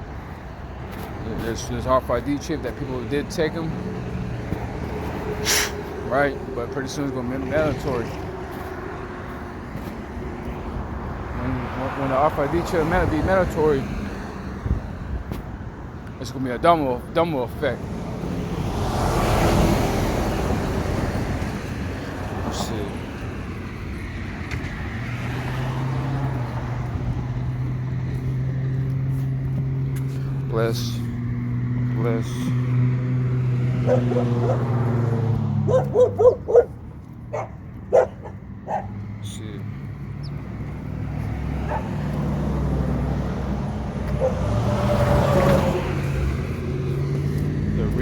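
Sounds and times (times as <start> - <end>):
road traffic noise: 0.0 - 48.0
motor vehicle passing by: 17.8 - 48.0
low engine hum: 23.1 - 48.0.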